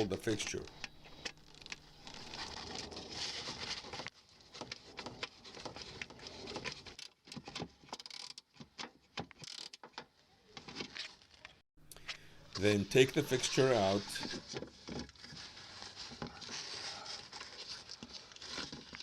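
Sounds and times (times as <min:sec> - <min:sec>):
rustling: 0:00.3 - 0:07.0, 0:10.7 - 0:19.0.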